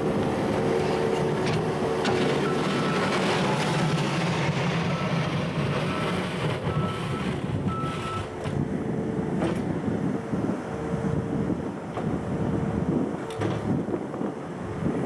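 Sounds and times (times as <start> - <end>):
diesel engine running: 0.0 - 13.1
backup alarm beeping: 5.8 - 8.3.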